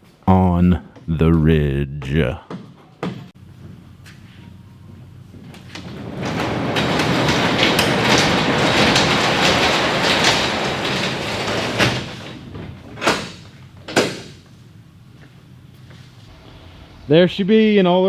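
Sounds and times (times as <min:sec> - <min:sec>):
garage door rattling on track: 0:05.1 - 0:15.8
sharp knocks: 0:05.8 - 0:14.5.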